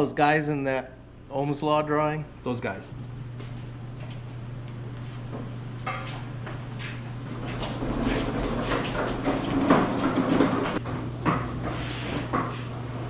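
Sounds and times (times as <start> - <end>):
low electrical hum: 0.0 - 13.0
knocking and clattering: 7.4 - 12.5.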